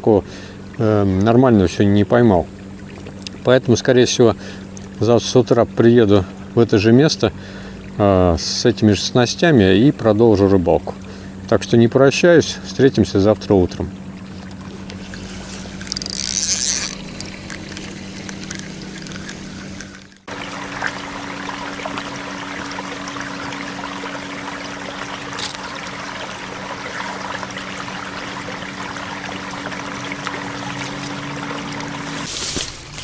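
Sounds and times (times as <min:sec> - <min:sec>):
low steady hum: 0:20.3 - 0:32.3
river water running: 0:20.3 - 0:32.4
water splash: 0:20.3 - 0:32.8.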